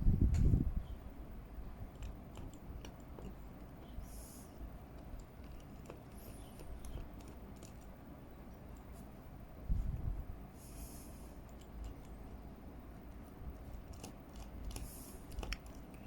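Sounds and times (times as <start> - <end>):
short scraping hisses: 4.0 - 4.6.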